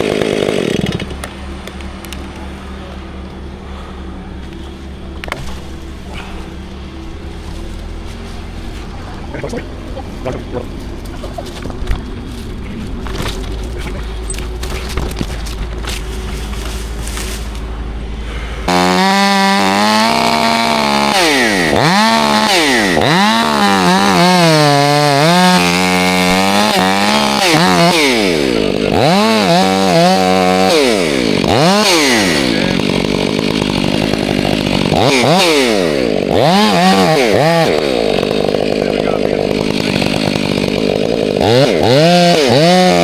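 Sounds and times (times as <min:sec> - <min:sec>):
chainsaw cutting: 0:00.0 - 0:43.0
low engine hum: 0:00.9 - 0:21.1.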